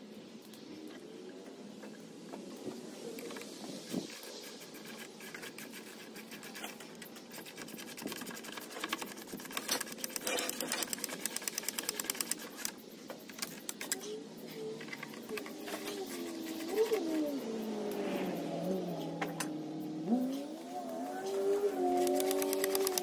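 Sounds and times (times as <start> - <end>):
handling noises: 0.5 - 18.0.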